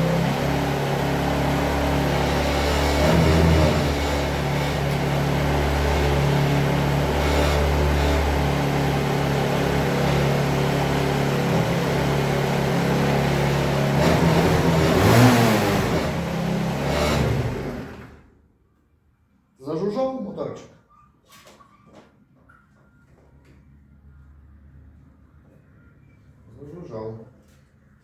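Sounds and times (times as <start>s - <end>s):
scooter engine idling: 0.0s - 3.7s
scooter engine revving: 0.0s - 18.3s.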